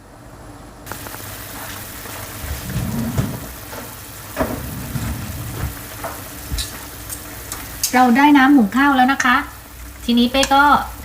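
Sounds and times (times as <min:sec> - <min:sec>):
pot boiling and bubbling: 0:00.9 - 0:11.0
dull knocks: 0:04.4 - 0:06.6.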